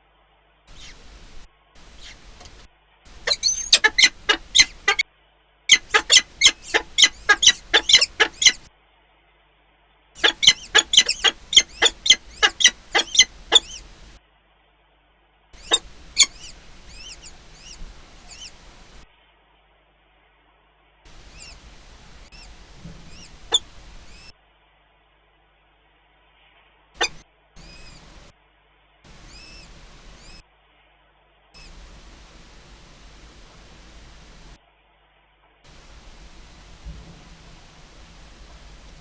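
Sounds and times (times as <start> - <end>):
high faint chirps: 0.7 - 5.0, 5.7 - 8.7, 10.2 - 14.2, 15.6 - 19.0, 21.1 - 24.3, 27.0 - 28.3, 29.1 - 30.4, 31.6 - 34.6, 35.7 - 39.0
raptor calling: 0.7 - 5.0, 5.7 - 8.7, 10.2 - 14.2, 15.6 - 19.0, 21.1 - 24.3, 27.0 - 28.3, 29.1 - 30.4, 31.6 - 34.6, 35.7 - 39.0.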